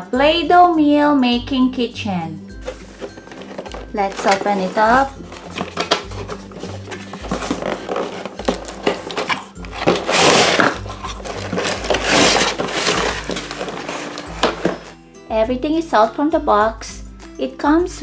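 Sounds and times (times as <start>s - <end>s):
background music: 0.0s - 18.0s
packaging rustling and scraping: 2.6s - 15.0s.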